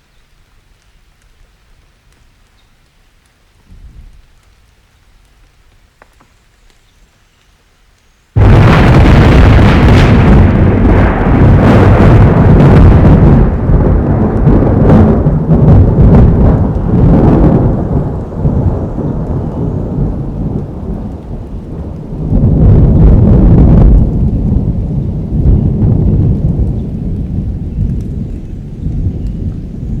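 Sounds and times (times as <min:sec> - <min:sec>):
rain: 0:00.0 - 0:30.0
thunder rumbling: 0:08.4 - 0:30.0.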